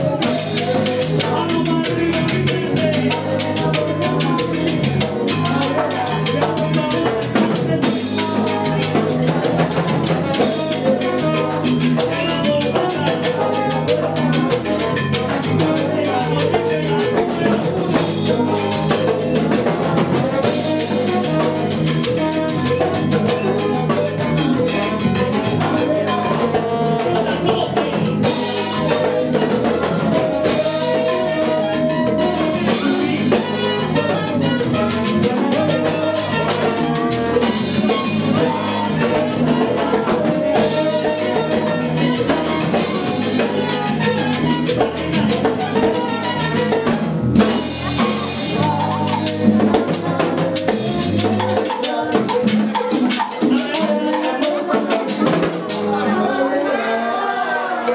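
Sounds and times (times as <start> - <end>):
salsa band playing: 0.0 - 57.9.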